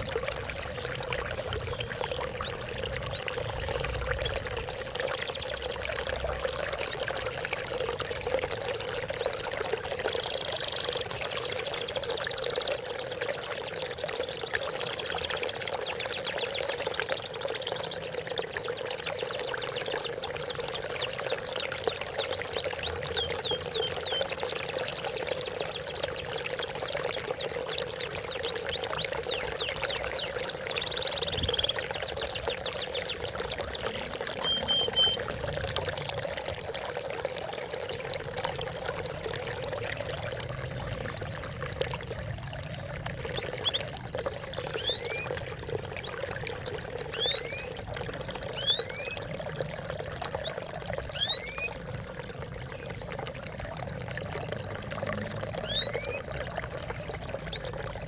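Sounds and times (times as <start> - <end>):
water trickling and splashing: 0.0 - 58.0
small birds chirping: 1.3 - 6.0, 9.1 - 35.3, 42.0 - 45.4, 46.0 - 49.2, 50.3 - 51.8, 55.0 - 56.2.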